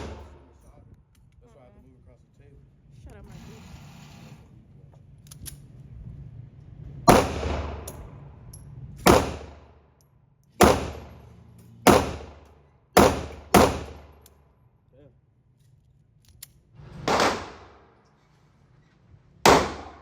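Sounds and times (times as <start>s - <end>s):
gunshots echoing indoors: 0.0s - 0.5s, 7.1s - 8.1s, 9.0s - 9.6s, 10.6s - 14.2s, 17.0s - 18.0s, 19.4s - 20.0s.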